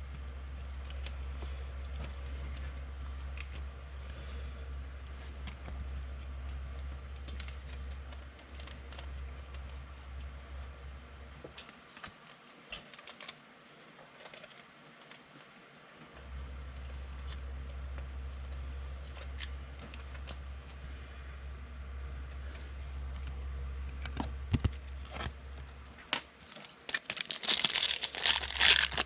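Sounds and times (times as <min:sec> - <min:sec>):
steady low hum: 0:00.0 - 0:11.9, 0:15.6 - 0:29.0
cards and wrappers rustling: 0:11.7 - 0:20.5, 0:26.4 - 0:29.0.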